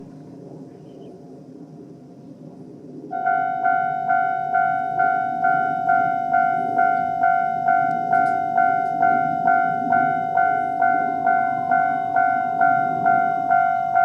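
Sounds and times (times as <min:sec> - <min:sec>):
level crossing warning bell: 0:03.1 - 0:14.0.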